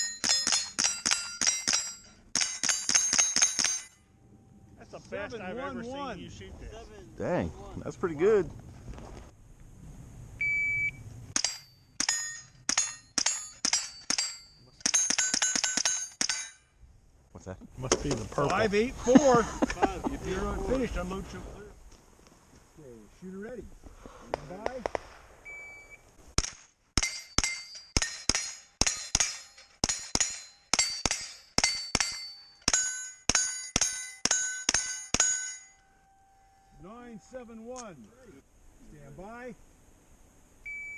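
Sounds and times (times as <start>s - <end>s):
steel plate metallic ring: 0.0s - 4.1s, 11.4s - 16.8s, 27.0s - 37.6s
rifle shots: 0.2s - 4.0s, 11.3s - 16.5s, 24.6s - 25.6s, 26.3s - 35.5s
shot timer beep: 10.4s - 12.4s, 25.5s - 26.0s, 40.7s - 40.9s.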